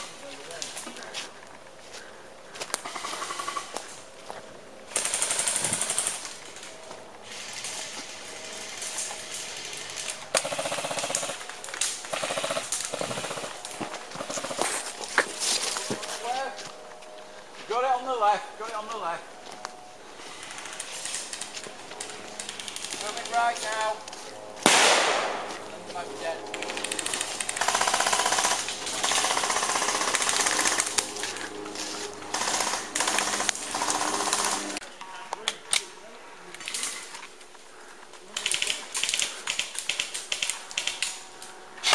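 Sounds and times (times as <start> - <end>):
airsoft guns firing bursts: 4.9 - 6.3, 9.6 - 13.6, 24.6 - 25.5, 26.6 - 31.1, 32.3 - 34.8.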